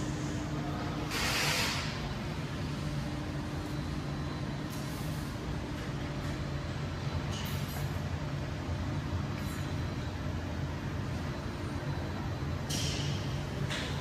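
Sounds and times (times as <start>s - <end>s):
machinery humming: 0.0s - 14.0s
air hiss: 1.1s - 1.9s.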